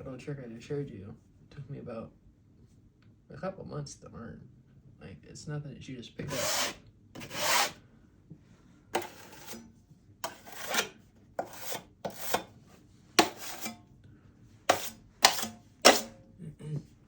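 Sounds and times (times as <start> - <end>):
drywall knife scraping wall: 6.2 - 7.8, 9.0 - 12.6, 13.2 - 13.9, 14.7 - 16.2.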